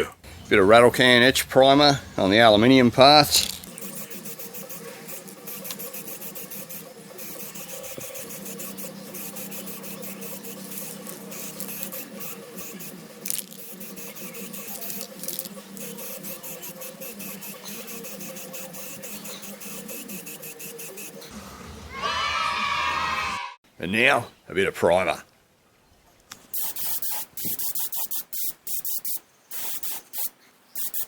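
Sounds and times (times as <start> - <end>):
spray can hissing in spurts: 3.0 - 21.3, 26.5 - 31.0.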